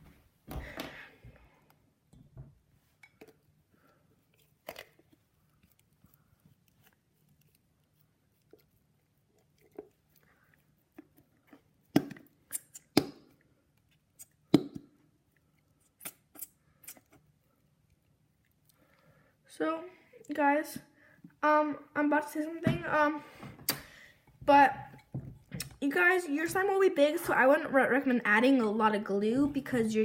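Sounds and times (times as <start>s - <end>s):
sticky slime squelches: 3.3s - 19.0s.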